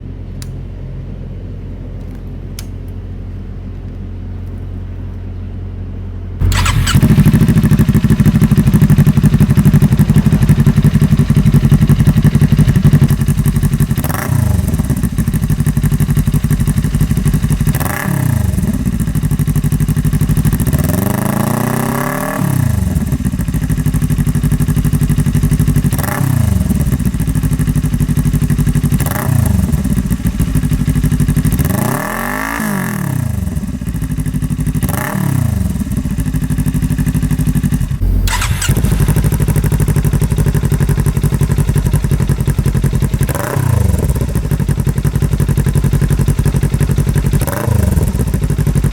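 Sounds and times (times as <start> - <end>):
motorcycle engine idling and revving: 5.5 - 48.9
low hum: 37.6 - 41.8.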